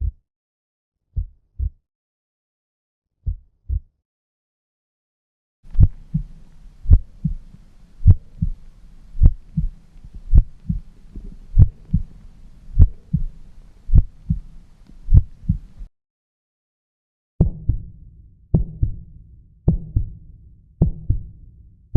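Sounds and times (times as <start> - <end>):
slow heartbeat: 0.0 - 0.2, 1.1 - 1.8, 3.2 - 3.9, 5.7 - 15.9, 17.4 - 21.6
low hum: 5.7 - 15.9.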